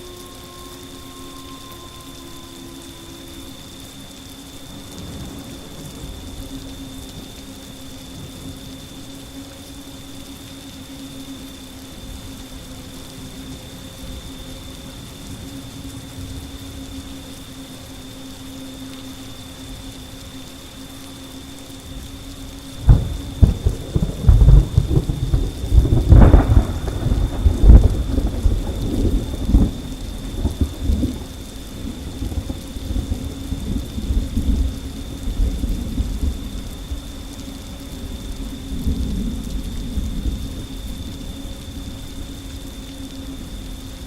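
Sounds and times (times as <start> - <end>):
thunder rumbling: 0.0 - 9.1, 22.7 - 44.0
faint steady high tone: 0.0 - 23.2
rain: 0.0 - 44.0.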